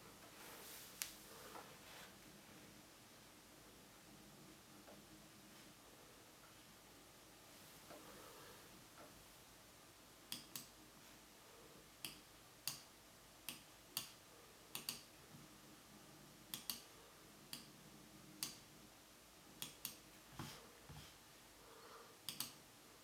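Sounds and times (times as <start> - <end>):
sharp clicks: 16.6 - 16.9, 22.3 - 22.6.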